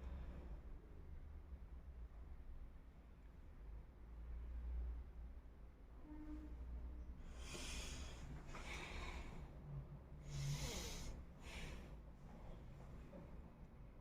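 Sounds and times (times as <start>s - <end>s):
person sniffing through nose: 10.3s - 11.2s.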